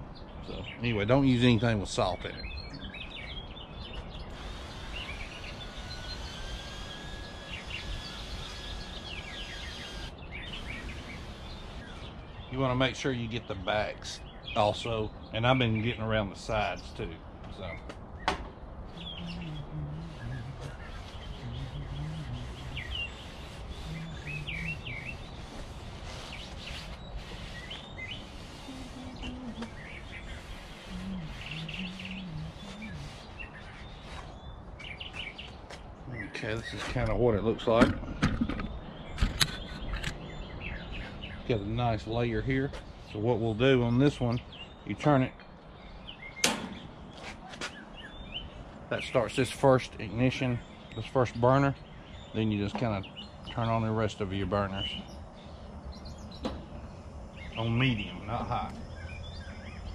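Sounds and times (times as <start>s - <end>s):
low outdoor rumble: 0.0s - 26.3s, 27.0s - 34.8s
small birds chirping: 0.0s - 59.9s.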